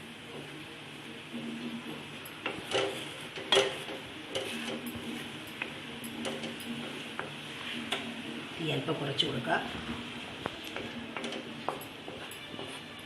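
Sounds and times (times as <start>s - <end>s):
liquid sizzling: 0.0s - 13.0s
spoon scraping in a pan: 2.3s - 8.1s, 10.6s - 13.0s.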